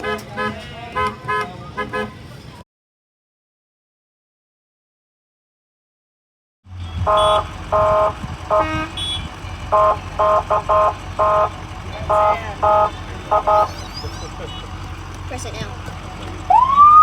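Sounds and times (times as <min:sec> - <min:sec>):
truck horn honks: 0:00.0 - 0:02.3, 0:06.7 - 0:17.0
steady low rumble: 0:06.8 - 0:17.0.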